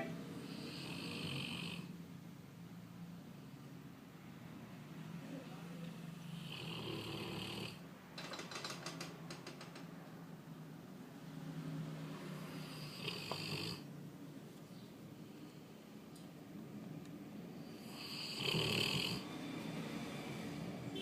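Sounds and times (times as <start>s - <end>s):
dog snoring: 0.4s - 1.9s, 6.2s - 7.8s, 12.4s - 13.9s, 17.6s - 19.3s.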